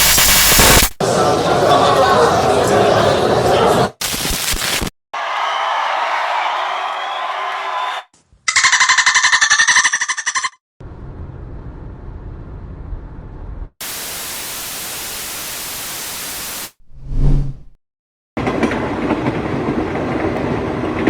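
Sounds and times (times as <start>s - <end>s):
tv static hiss: 0.0s - 1.0s, 13.8s - 16.7s
train interior noise: 18.4s - 21.0s.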